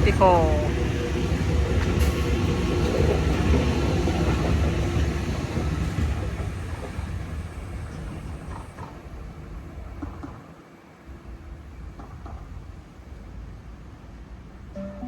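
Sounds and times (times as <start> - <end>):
electric train rumbling past: 0.0 - 10.4.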